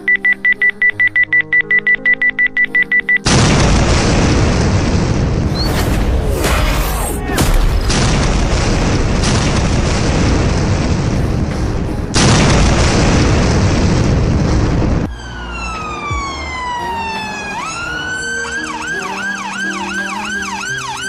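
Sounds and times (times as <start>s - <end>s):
background music: 0.0s - 21.0s
loud rushing blast of noise: 3.4s - 11.2s
police siren wail and yelp: 15.1s - 21.0s.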